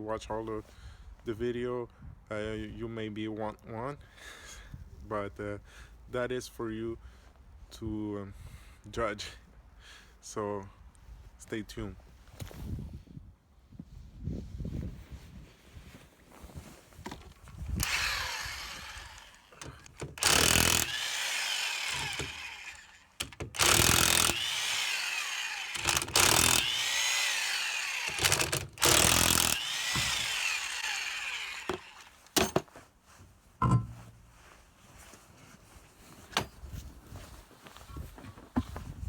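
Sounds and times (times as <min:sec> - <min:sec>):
electric impact wrench bursts: 0:17.8 - 0:32.5.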